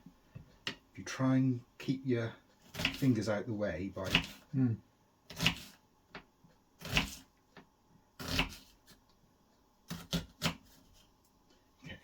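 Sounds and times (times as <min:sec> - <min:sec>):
knife slicing onion on board: 0:02.6 - 0:03.2, 0:04.0 - 0:04.5, 0:05.2 - 0:05.8, 0:06.8 - 0:07.3, 0:08.2 - 0:09.0, 0:09.8 - 0:11.0.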